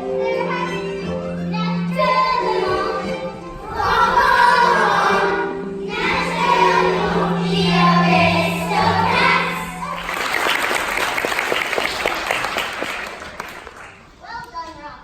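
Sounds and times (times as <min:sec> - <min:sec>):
children's choir singing: 0:00.0 - 0:12.1
audience applause: 0:09.8 - 0:14.1.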